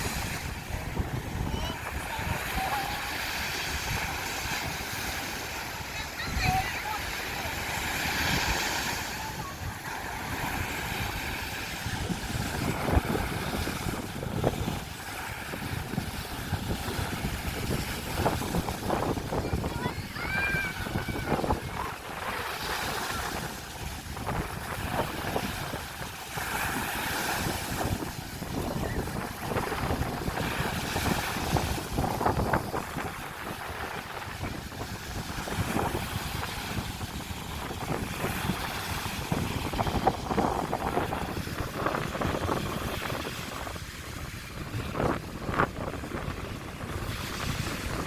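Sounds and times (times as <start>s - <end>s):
sea waves breaking on shore: 0.0s - 48.0s
wind buffeting microphone: 0.0s - 48.0s.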